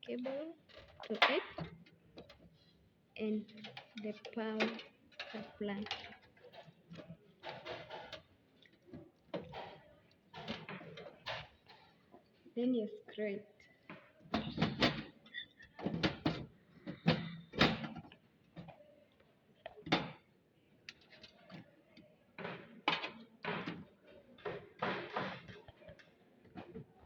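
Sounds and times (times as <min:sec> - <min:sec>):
metal parts knocking and clattering: 0:00.2 - 0:02.4, 0:03.4 - 0:08.3.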